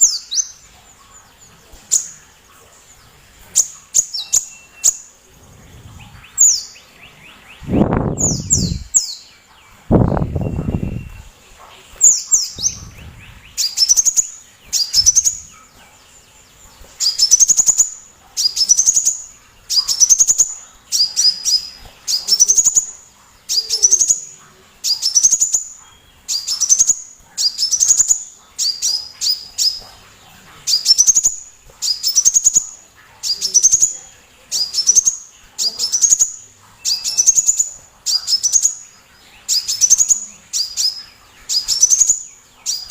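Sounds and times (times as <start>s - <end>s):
bird singing high phrase: 5.7s - 11.4s, 12.0s - 15.7s.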